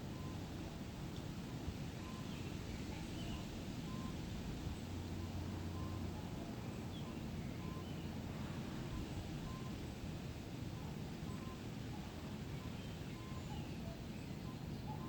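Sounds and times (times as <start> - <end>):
faint birds calling: 10.7 - 15.0.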